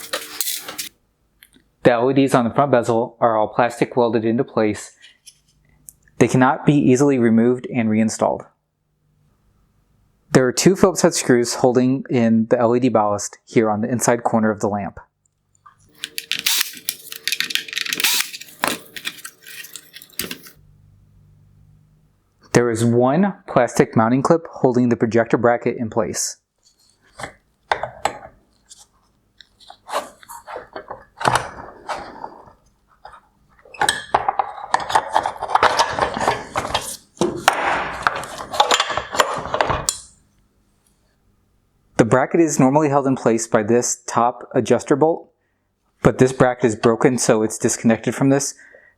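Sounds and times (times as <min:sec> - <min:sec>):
screwdriver clicking on plastic: 0:16.0 - 0:20.6.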